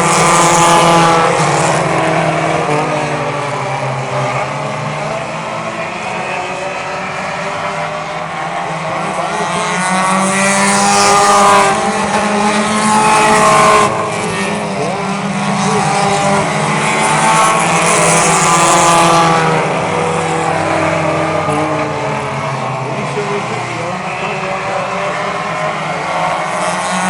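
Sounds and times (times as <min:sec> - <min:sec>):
race car engines revving: 0:00.0 - 0:27.0.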